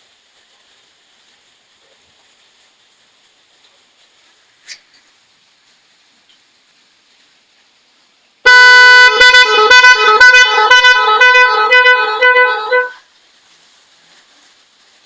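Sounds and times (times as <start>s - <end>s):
musical horn playing a tune: 8.5s - 13.0s.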